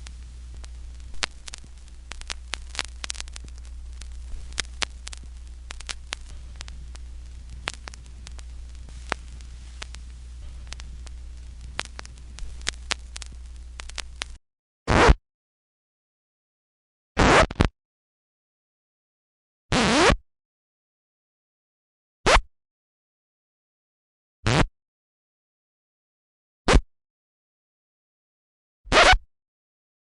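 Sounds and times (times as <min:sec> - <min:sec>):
low hum: 0:00.0 - 0:14.4
record scratch: 0:00.0 - 0:15.2, 0:17.2 - 0:17.7, 0:19.7 - 0:20.2, 0:24.5 - 0:24.7, 0:28.9 - 0:29.2
vinyl crackles and pops: 0:00.0 - 0:15.2, 0:17.2 - 0:17.7.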